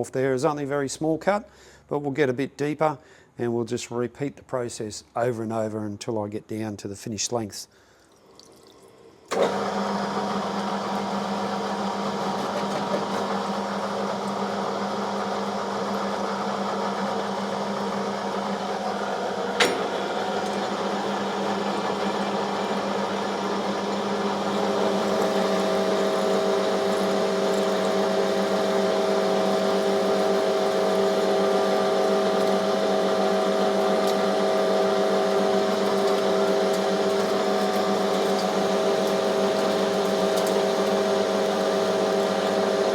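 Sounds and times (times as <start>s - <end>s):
metal lathe running: 9.3s - 42.9s.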